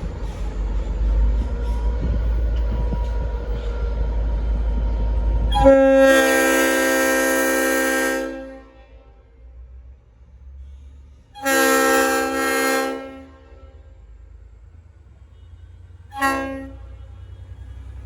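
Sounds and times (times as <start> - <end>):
loud low train rumble: 0.0 - 18.0
locomotive air horn chord blast: 5.5 - 9.2, 11.3 - 14.0, 15.3 - 17.6.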